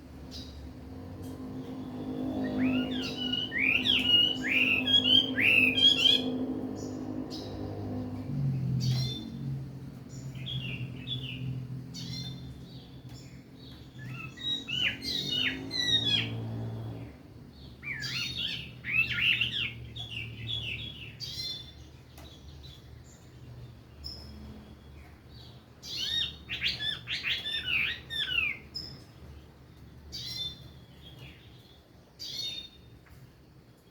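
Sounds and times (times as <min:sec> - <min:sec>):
bird singing whistled phrases: 0:02.5 - 0:06.3.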